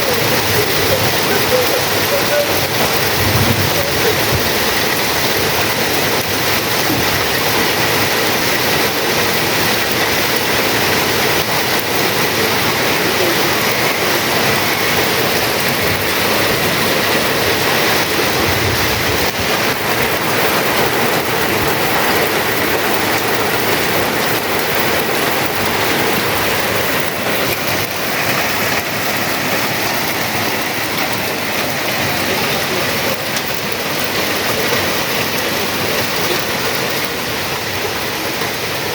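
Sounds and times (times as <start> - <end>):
loud rushing noise: 0.0 - 7.2.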